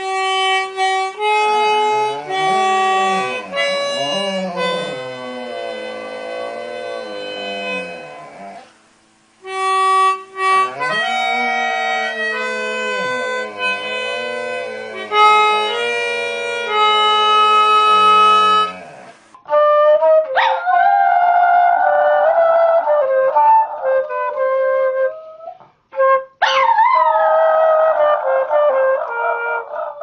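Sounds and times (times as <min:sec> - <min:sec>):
higher-pitched instrument: 0:00.0 - 0:19.6
instrument playing held notes: 0:00.0 - 0:20.3
dog howling: 0:01.2 - 0:08.7, 0:10.4 - 0:19.2, 0:26.4 - 0:30.0.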